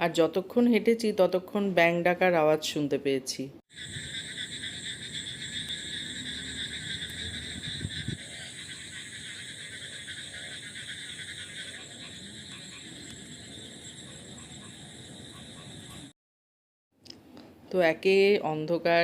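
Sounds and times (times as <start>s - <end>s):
frogs calling: 3.7s - 16.1s.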